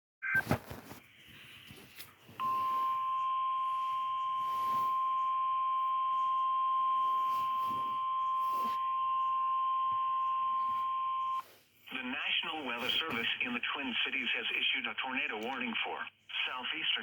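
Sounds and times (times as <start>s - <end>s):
steady warning alarm tone: 2.4s - 11.4s.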